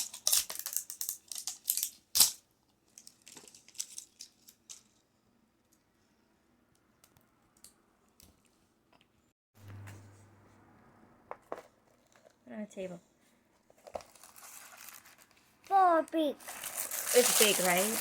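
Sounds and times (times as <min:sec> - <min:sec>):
paper and plastic crinkling: 0:13.7 - 0:18.0.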